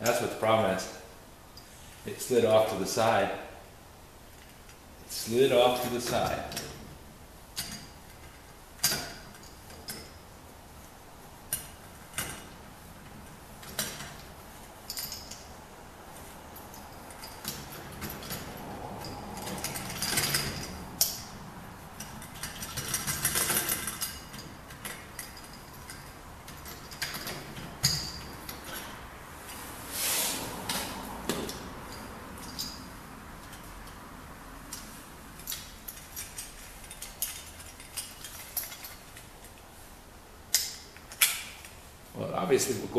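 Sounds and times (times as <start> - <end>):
metal clicks and knocks: 7.6 - 10.2, 11.5 - 15.4, 16.7 - 21.3, 22.0 - 29.0.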